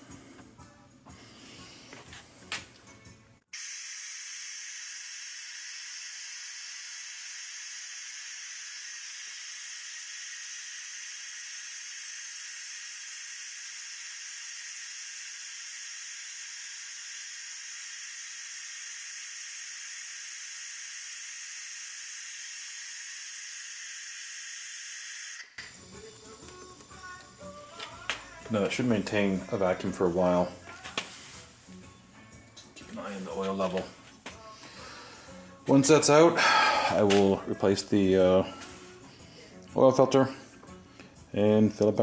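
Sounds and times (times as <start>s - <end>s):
compressed air hissing: 3.5s - 28.0s, 34.5s - 35.6s, 36.4s - 37.5s.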